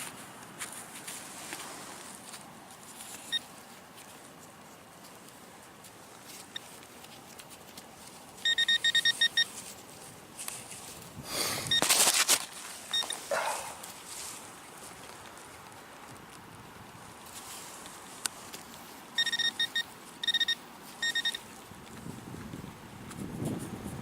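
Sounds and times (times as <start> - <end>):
metal detector beeping: 3.2 - 3.5, 6.4 - 6.8, 8.4 - 9.7, 11.7 - 12.0, 12.9 - 13.3, 19.2 - 21.5.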